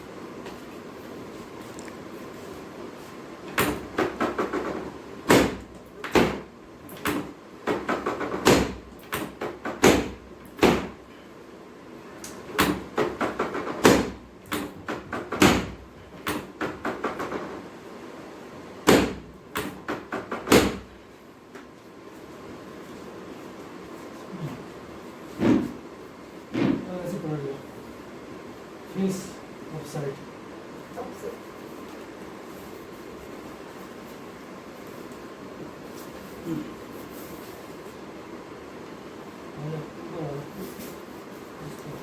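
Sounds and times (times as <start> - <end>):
sharp knocks and taps: 7.0 - 10.9, 12.6 - 17.6.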